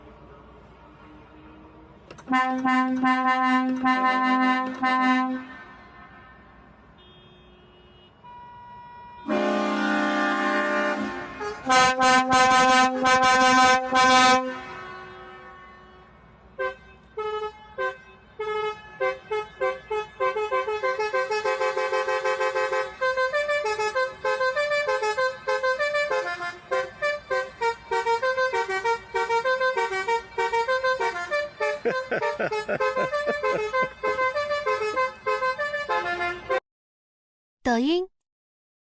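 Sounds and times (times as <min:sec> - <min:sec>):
multi-tone musical car horn: 0:02.2 - 0:36.6.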